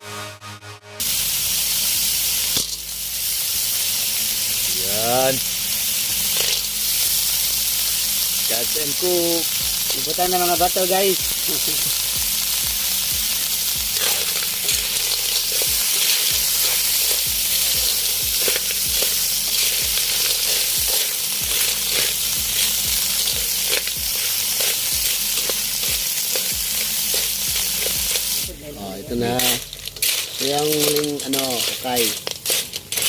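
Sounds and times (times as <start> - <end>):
food sizzling in a pan: 1.0 - 33.0
stirring strokes: 13.8 - 28.5, 29.1 - 33.0.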